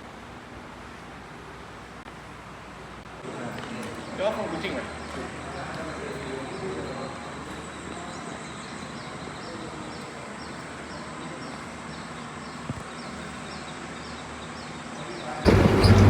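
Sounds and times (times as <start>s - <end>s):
airliner cabin drone: 15.5s - 16.0s.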